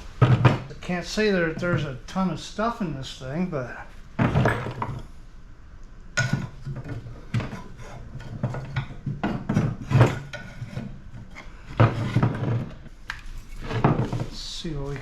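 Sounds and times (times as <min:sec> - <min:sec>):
metal clanks and knocks: 0:04.2 - 0:05.1, 0:06.2 - 0:12.8.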